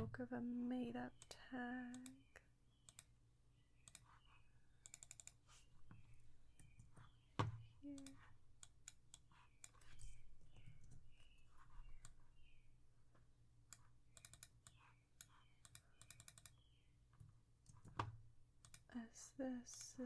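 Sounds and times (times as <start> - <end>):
computer mouse clicks: 1.2 - 3.1, 3.8 - 7.1, 7.9 - 12.6, 13.7 - 18.9.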